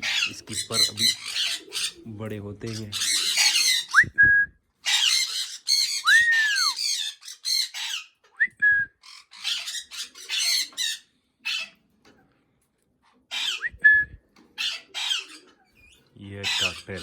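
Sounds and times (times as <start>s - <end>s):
parrots squawking: 0.0s - 4.1s, 4.8s - 8.2s, 9.0s - 11.9s, 13.2s - 13.7s, 14.4s - 17.0s.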